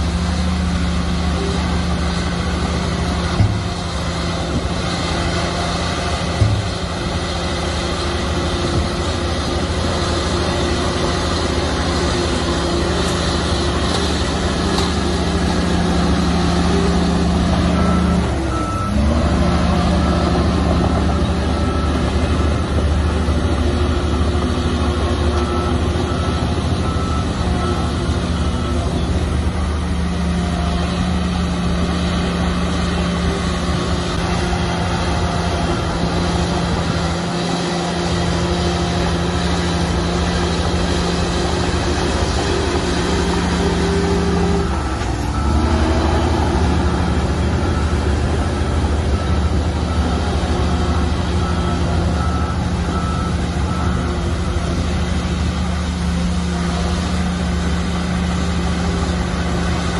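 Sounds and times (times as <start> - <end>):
heavy diesel engines under load: 0.0 - 59.9
reversing alarm beeps: 14.2 - 31.0, 31.9 - 56.2.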